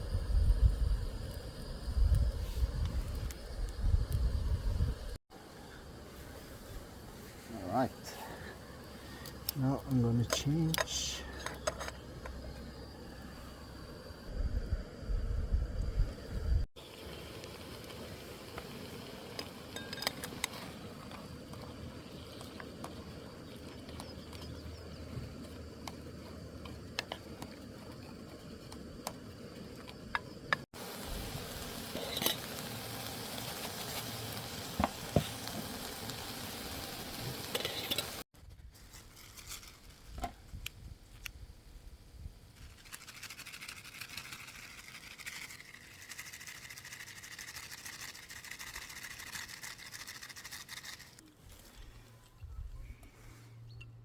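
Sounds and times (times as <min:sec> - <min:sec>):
food sizzling in a pan: 0:30.8 - 0:38.2.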